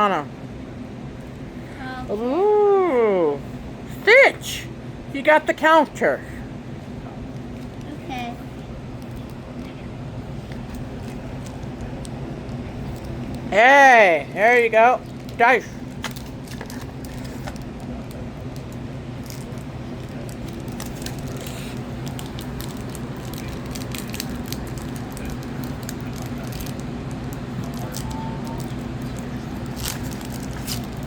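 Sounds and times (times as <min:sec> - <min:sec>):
steady low hum: 0:00.0 - 0:31.0
wrappers and cards crinkling: 0:10.4 - 0:13.5, 0:15.0 - 0:31.0.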